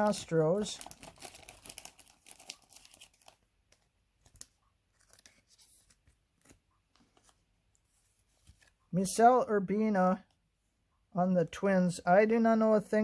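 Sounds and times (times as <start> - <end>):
cards rustling and clicking: 0.0 - 8.9.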